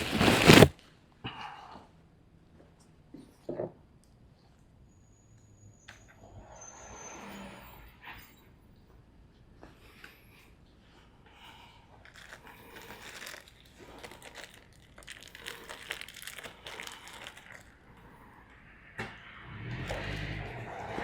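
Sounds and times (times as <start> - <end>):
rustling and crinkling: 0.0 - 0.7, 12.0 - 17.8.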